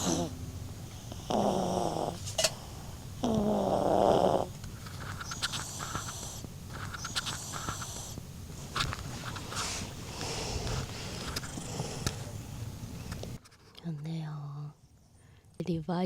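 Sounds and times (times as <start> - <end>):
dog snoring: 0.0 - 8.2, 10.2 - 12.4
wheezy breathing: 9.5 - 12.4.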